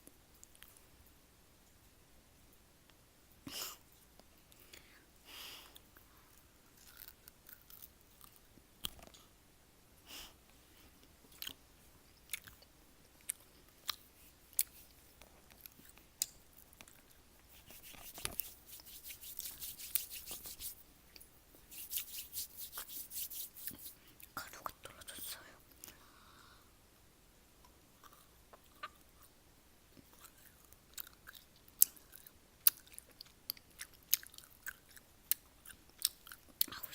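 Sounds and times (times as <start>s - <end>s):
person chewing food: 6.8s - 9.2s, 11.3s - 11.6s, 12.2s - 24.2s, 30.0s - 36.6s.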